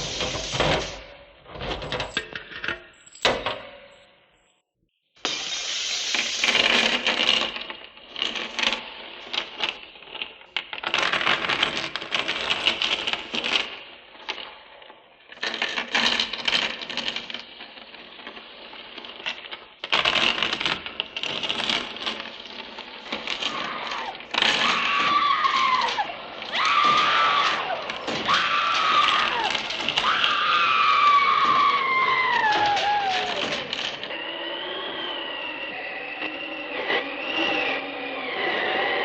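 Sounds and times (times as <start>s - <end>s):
wailing voice: 23.5s - 33.8s.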